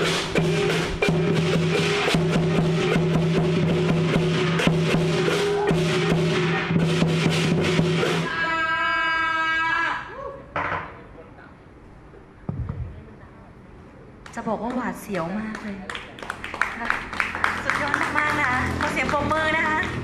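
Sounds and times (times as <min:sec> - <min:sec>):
cymbal clashes: 0:00.0 - 0:08.4
drum strokes: 0:00.0 - 0:08.4.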